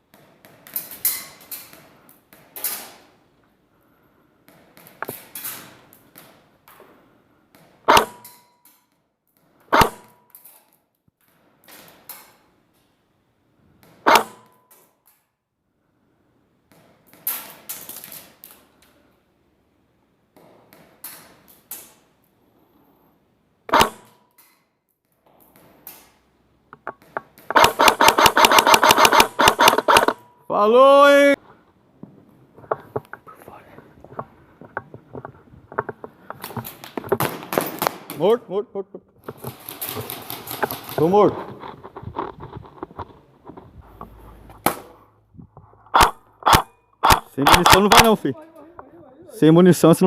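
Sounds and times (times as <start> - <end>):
airsoft gun shots: 7.9 - 8.3, 9.7 - 10.1, 14.0 - 14.5, 23.7 - 24.1, 27.5 - 30.2, 45.9 - 48.2
scratchy rustling: 39.3 - 44.6.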